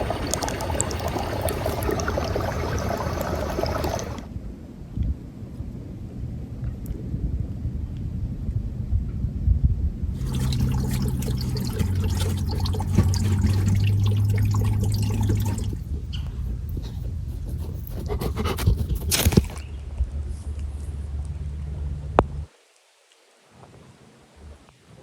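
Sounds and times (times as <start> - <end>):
water drips and clicks: 0.0 - 4.3, 10.2 - 19.8
water trickling and splashing: 0.0 - 4.3, 10.2 - 19.9
steady low rumble: 0.0 - 18.0, 19.7 - 22.5.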